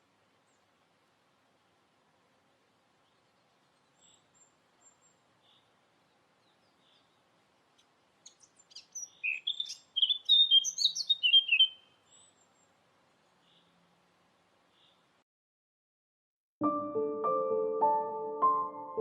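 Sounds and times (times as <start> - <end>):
songbird singing: 2.6 - 15.2.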